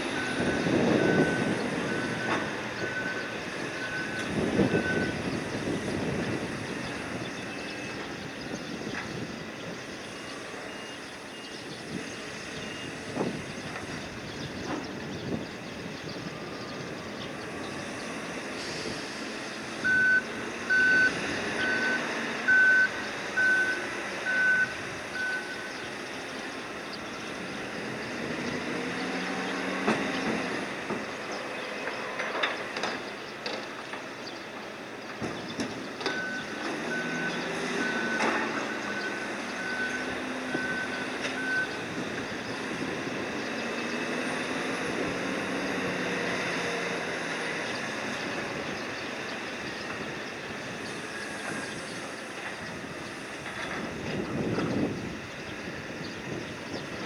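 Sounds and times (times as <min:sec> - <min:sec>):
electronic warning beeps: 0:00.0 - 0:05.5, 0:19.8 - 0:25.9, 0:36.1 - 0:42.0
machinery drone: 0:00.0 - 0:57.0.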